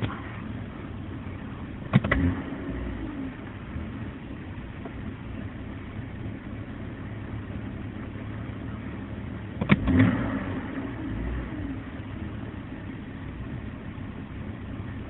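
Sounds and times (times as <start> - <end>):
car engine idling roughly: 0.0 - 9.8, 11.8 - 15.0
engine pop: 1.8 - 2.6, 9.5 - 10.3.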